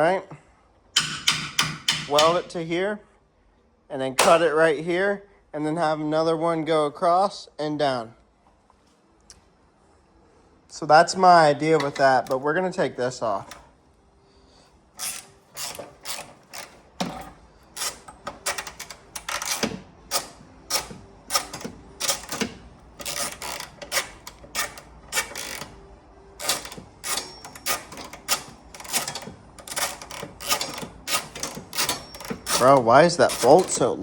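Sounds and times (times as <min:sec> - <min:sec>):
ratchet wrench clicking: 0:15.0 - 0:25.8, 0:26.4 - 0:34.0.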